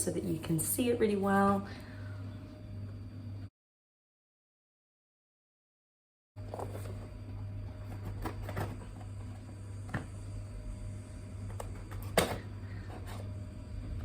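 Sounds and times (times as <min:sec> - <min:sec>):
steady low hum: 0:00.0 - 0:03.5, 0:06.4 - 0:14.0.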